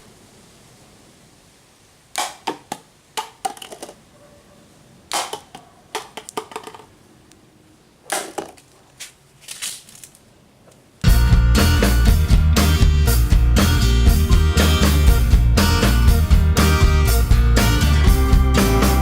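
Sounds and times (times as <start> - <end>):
paper crinkling: 8.4 - 10.3.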